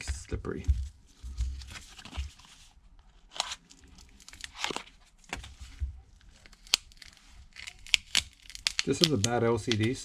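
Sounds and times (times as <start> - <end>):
adhesive crackling and tearing: 3.4 - 5.0, 6.2 - 10.0.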